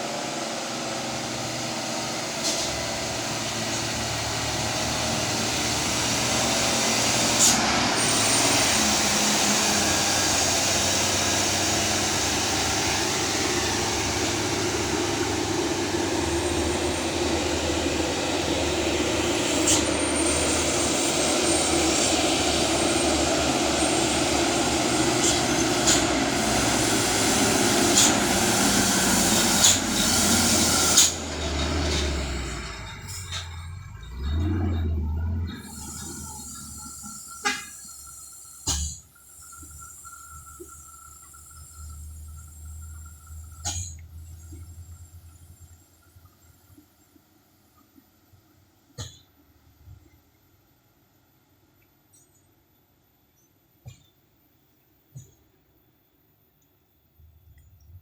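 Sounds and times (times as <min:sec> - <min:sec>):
truck diesel engine roaring: 0:00.0 - 0:46.3.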